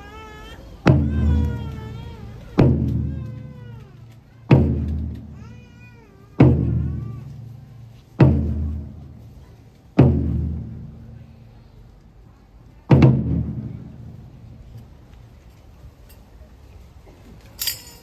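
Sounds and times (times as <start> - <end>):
heavy drum strikes: 0.8 - 3.6, 4.5 - 5.6, 6.4 - 11.2, 12.9 - 14.6.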